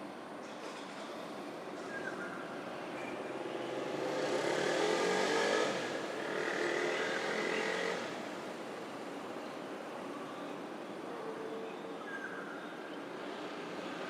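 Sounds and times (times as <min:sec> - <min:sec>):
road noise: 0:00.6 - 0:11.3.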